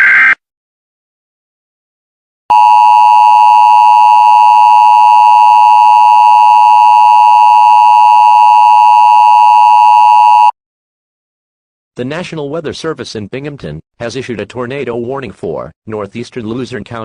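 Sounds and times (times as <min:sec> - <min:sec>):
two-tone alarm: 0:02.5 - 0:10.5.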